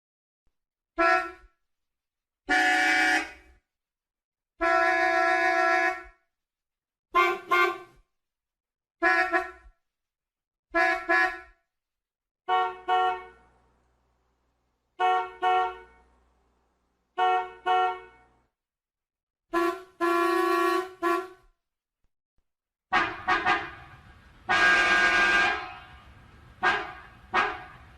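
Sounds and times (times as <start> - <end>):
car horns honking: 1.0 - 1.5, 2.5 - 3.4, 4.6 - 6.1, 7.2 - 7.9, 9.0 - 9.6, 10.8 - 11.6, 12.5 - 13.5, 15.0 - 16.1, 17.1 - 18.4, 19.5 - 21.4, 22.9 - 27.9.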